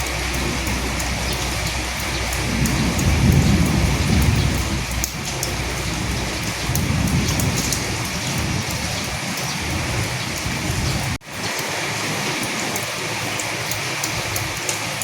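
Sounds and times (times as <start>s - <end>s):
low rumble: 0.0s - 11.2s
raindrops ticking close by: 0.0s - 15.0s
steady rain falling: 0.0s - 15.0s.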